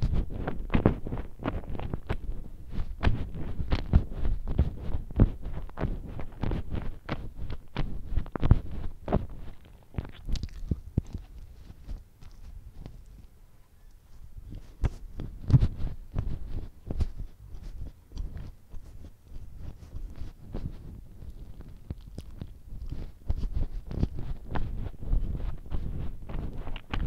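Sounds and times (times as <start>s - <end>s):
person chewing food: 5.5s - 13.3s, 17.6s - 27.0s.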